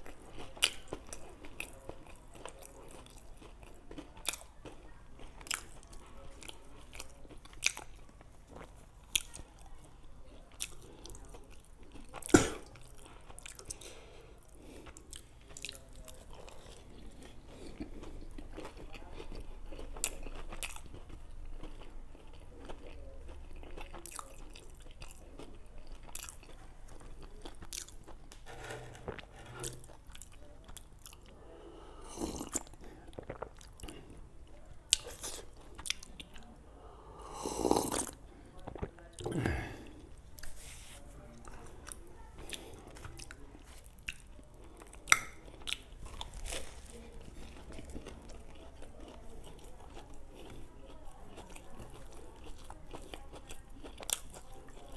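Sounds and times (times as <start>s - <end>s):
person biting and chewing: 45.0s - 48.2s.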